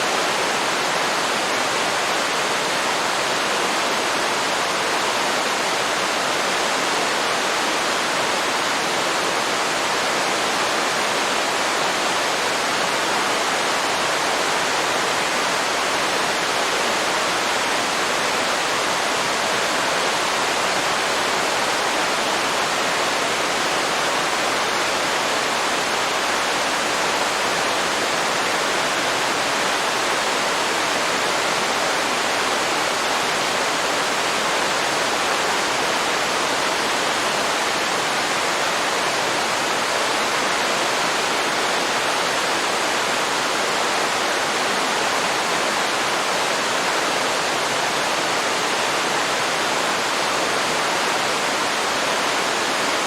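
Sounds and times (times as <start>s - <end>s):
waterfall pouring into river: 0.0s - 53.0s.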